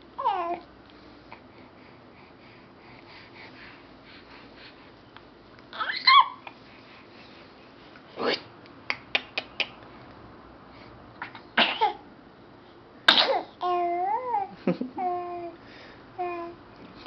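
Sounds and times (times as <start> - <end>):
baby cooing: 0.2 - 0.6, 5.7 - 6.5
baby sneezing: 5.8 - 6.4, 11.2 - 12.0, 13.1 - 13.6.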